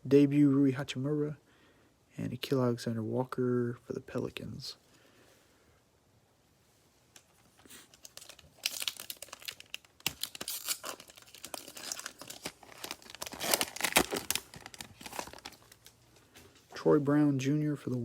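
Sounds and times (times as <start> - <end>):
foil wrapper tearing and crinkling: 7.9 - 16.0.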